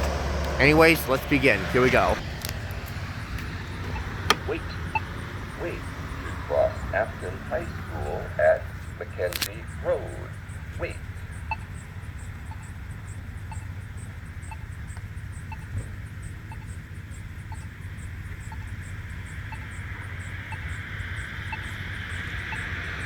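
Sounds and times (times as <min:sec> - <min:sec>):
low traffic rumble: 0:00.0 - 0:23.0
passing vehicle: 0:00.0 - 0:23.0
signal button ticking tone: 0:03.8 - 0:16.8, 0:17.5 - 0:17.8, 0:18.4 - 0:18.8, 0:19.4 - 0:23.0.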